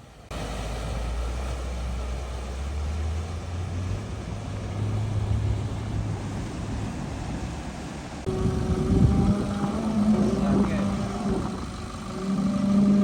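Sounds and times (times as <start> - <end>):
car engine running at low revs: 8.3 - 13.0.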